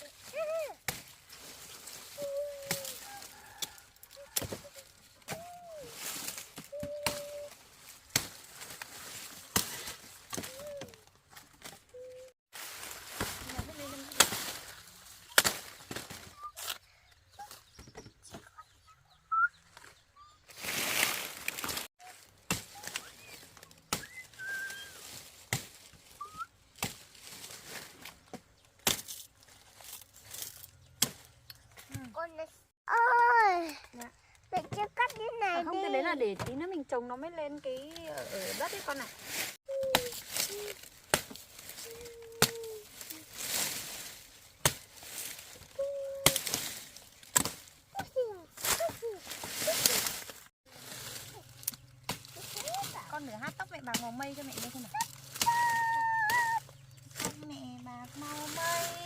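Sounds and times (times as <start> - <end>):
sugarcane knocks and cracks: 0.8 - 11.9, 12.6 - 16.8, 20.7 - 32.1, 39.3 - 57.5
bird chirps: 15.3 - 20.6, 26.2 - 26.5.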